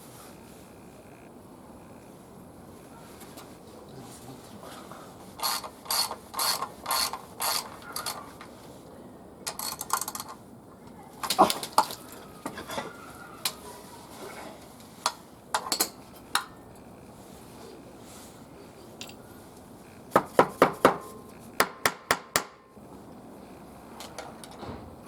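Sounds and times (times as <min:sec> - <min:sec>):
ratchet wrench on a bolt: 0:05.4 - 0:08.2
hand tools clicking and knocking: 0:05.4 - 0:08.5, 0:09.5 - 0:10.4, 0:19.0 - 0:19.2, 0:20.1 - 0:22.7.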